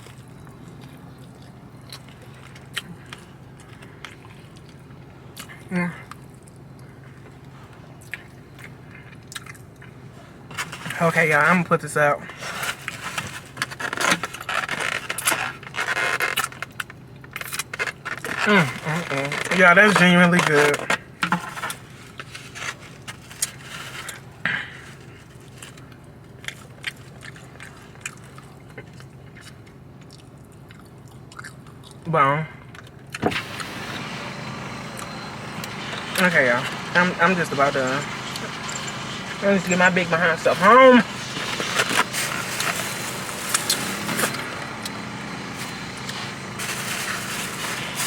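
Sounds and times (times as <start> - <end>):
chewing and mouth clicks: 0.0 - 10.0, 24.9 - 32.1
steady low hum: 0.0 - 48.0.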